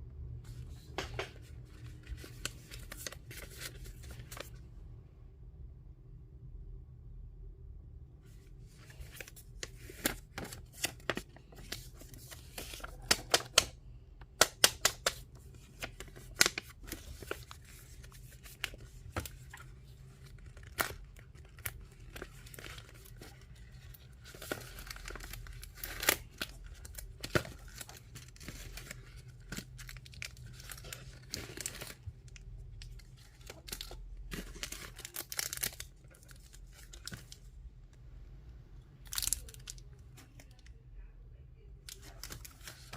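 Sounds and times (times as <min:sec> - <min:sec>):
packaging torn and crinkled: 0:14.4 - 0:37.4, 0:39.0 - 0:40.3.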